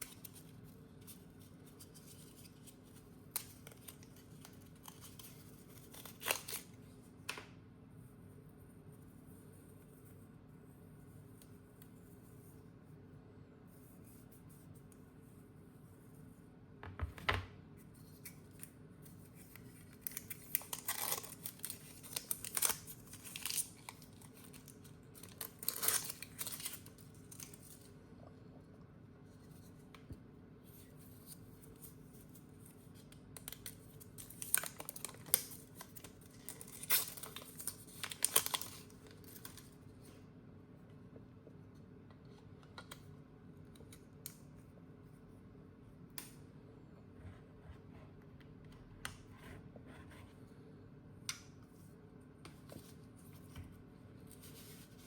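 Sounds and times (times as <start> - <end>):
packaging being torn and crinkled: 1.8 - 6.8, 19.3 - 27.9, 33.0 - 39.8.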